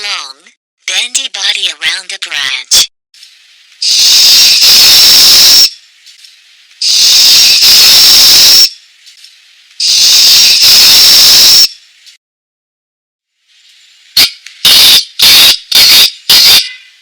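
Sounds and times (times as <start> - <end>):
recorded snake hiss from speaker: 3.2 - 12.2, 13.3 - 14.6.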